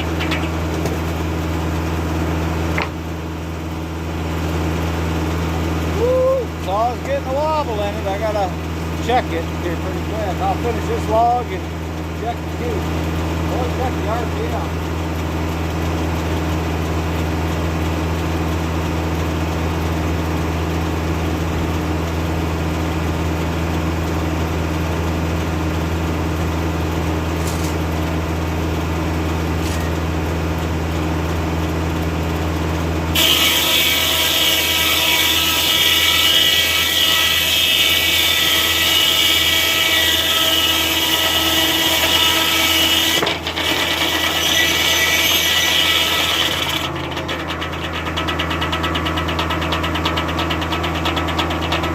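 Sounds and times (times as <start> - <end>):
sawmill humming: 0.0 - 51.9
circular saw cutting log: 6.5 - 15.2, 33.1 - 51.9.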